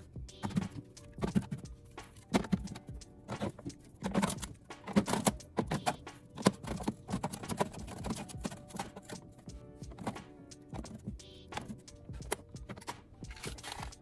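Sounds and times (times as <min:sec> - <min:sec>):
containers and packaging clicking: 0:00.4 - 0:14.0.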